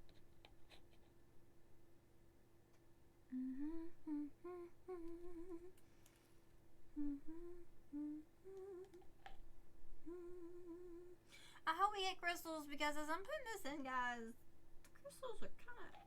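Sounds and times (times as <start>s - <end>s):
faint steady background tone: 0.0s - 16.0s
woman humming: 3.3s - 5.8s, 6.9s - 9.2s, 10.0s - 11.3s.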